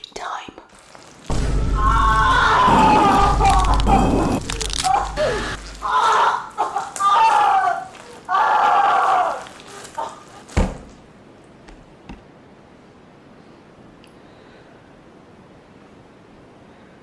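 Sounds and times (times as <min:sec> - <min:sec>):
deep thump: 0:01.3 - 0:05.9, 0:10.6 - 0:11.0
person crying out and groaning: 0:01.8 - 0:10.1.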